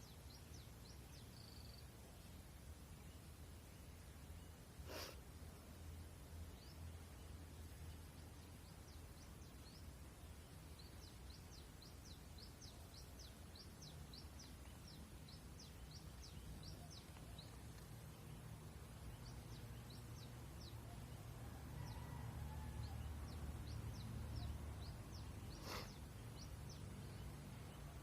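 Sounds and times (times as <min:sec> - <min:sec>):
sparrow chirping: 0:08.2 - 0:28.0.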